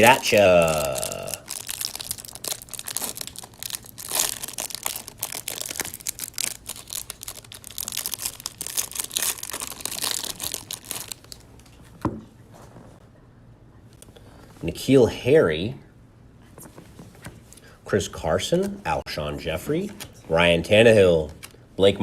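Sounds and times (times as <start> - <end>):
cardboard and plastic packaging tearing: 0.0 - 11.4.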